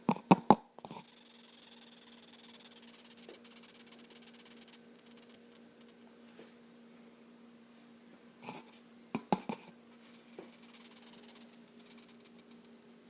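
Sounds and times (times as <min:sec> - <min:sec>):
steady low hum: 0:00.0 - 0:13.0
insect high-pitched rasping squeak: 0:01.0 - 0:06.0, 0:10.1 - 0:12.7.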